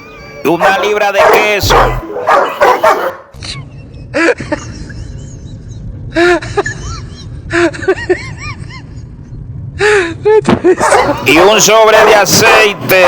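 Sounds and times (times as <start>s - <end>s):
dogs whining and yipping: 0.0s - 3.2s, 10.8s - 11.3s.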